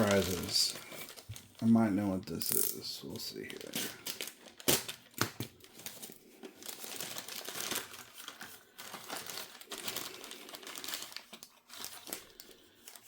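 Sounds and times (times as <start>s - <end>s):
packaging crinkling and rustling: 0.0s - 13.0s.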